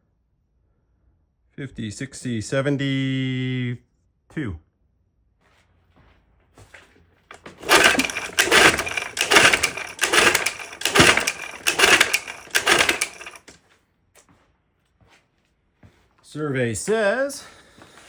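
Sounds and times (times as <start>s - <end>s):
outboard engine recoil starter pulls: 7.3s - 13.6s.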